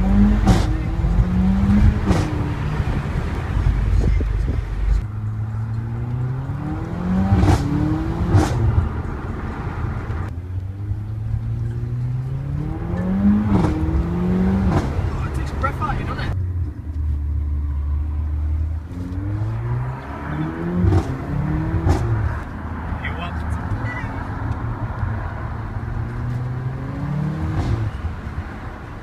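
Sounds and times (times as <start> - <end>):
exhaust pops: 0.0 - 0.9, 1.6 - 4.6, 20.8 - 22.6
car engine accelerating: 0.0 - 29.0.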